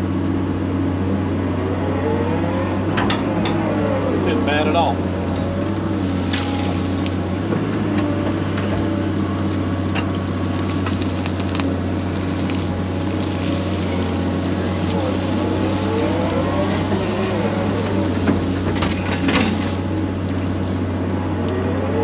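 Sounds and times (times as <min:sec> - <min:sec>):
excavator diesel engine running: 0:00.0 - 0:22.0
clicks and cracks: 0:05.3 - 0:20.9.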